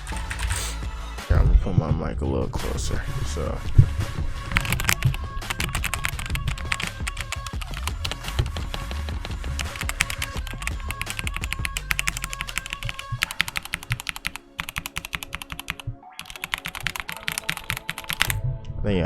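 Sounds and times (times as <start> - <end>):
fast typing on mechanical keyboard: 0.0 - 0.8, 4.5 - 18.4.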